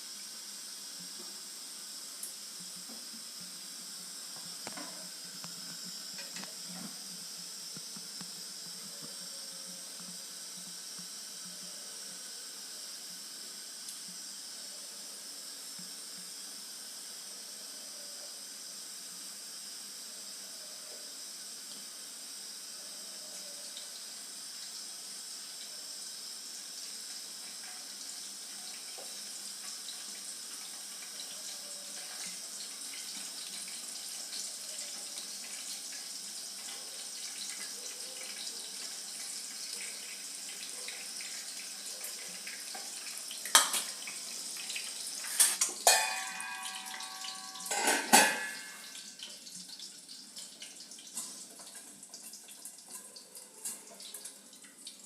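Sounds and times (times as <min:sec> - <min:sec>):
egg frying in hot oil: 0:00.0 - 0:55.0
metal clinks against pan: 0:45.8 - 0:48.7.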